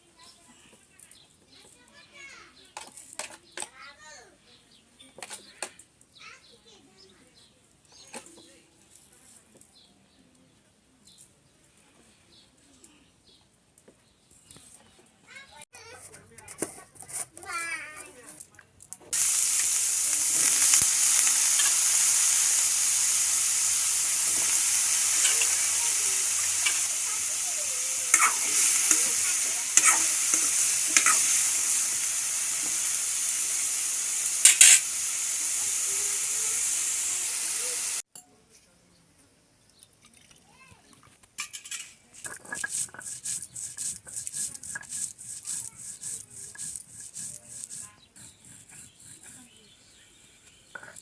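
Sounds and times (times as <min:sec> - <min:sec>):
food sizzling in oil: 0:19.1 - 0:38.1
rhythmic rasping scraping strokes: 0:19.2 - 0:34.8, 0:42.3 - 0:49.6.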